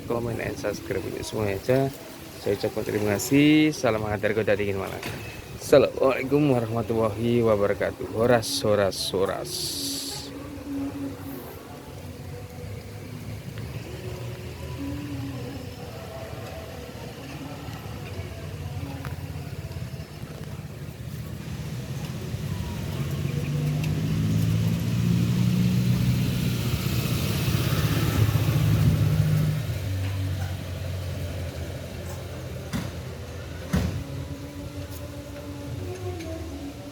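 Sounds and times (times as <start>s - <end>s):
bus engine running: 9.5s - 36.9s.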